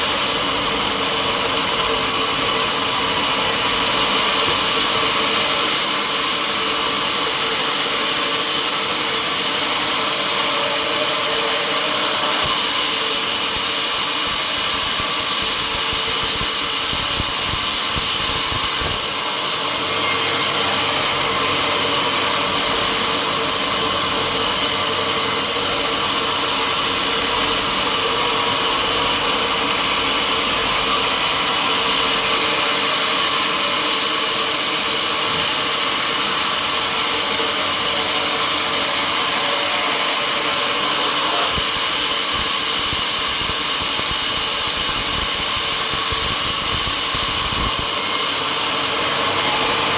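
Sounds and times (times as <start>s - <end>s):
saw blade cutting log: 0.0s - 49.9s.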